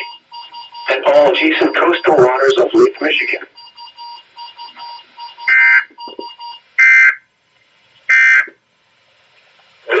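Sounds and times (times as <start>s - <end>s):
faint pulsing beeps: 0.0s - 6.6s.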